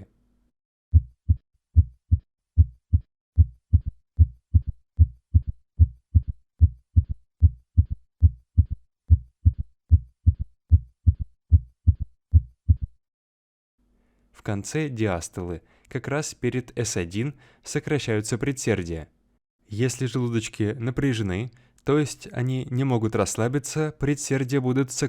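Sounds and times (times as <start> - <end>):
heartbeat thuds: 0.9 - 13.0.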